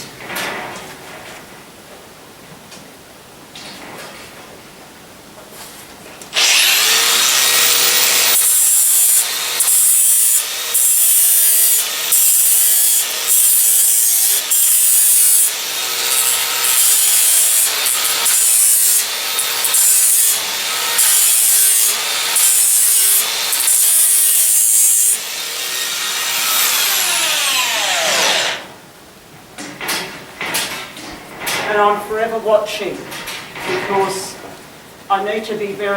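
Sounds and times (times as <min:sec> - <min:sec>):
electric grinder motor whine: 0:06.4 - 0:08.4, 0:25.4 - 0:28.7
grinder rasping on hoof: 0:06.4 - 0:28.7.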